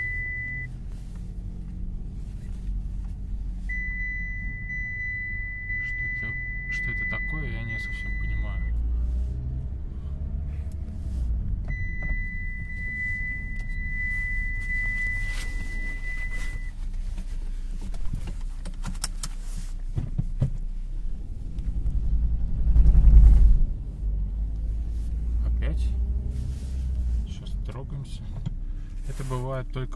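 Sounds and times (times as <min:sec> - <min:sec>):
high beep: 0:00.0 - 0:00.7, 0:03.7 - 0:08.7, 0:11.7 - 0:16.7
car engine rumble: 0:00.0 - 0:29.9.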